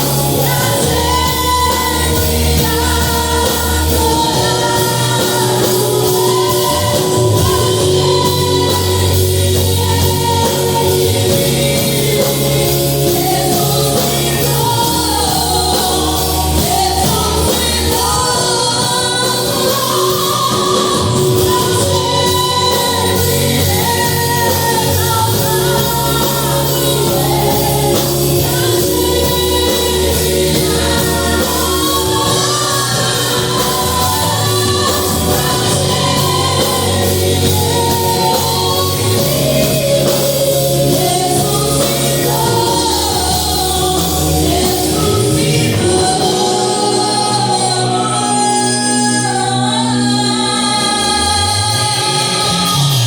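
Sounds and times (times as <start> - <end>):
sustained bass line: 0.0 - 53.0
voices singing: 0.0 - 53.0.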